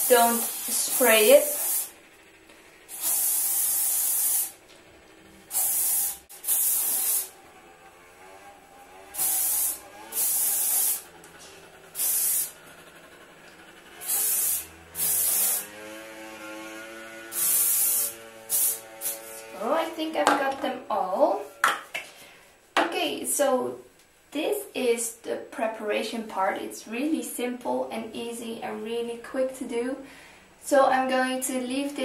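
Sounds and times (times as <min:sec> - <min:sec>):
hairspray can hissing bursts: 0:00.0 - 0:02.0, 0:02.9 - 0:04.6, 0:05.5 - 0:07.4, 0:09.2 - 0:11.1, 0:11.9 - 0:12.6, 0:14.0 - 0:15.7, 0:17.3 - 0:19.5.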